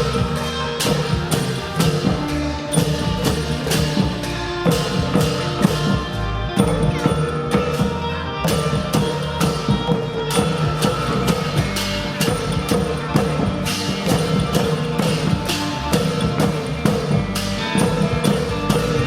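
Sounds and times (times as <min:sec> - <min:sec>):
percussion keeping steady beat: 0:00.0 - 0:19.0
wooden log xylophone: 0:00.0 - 0:19.0.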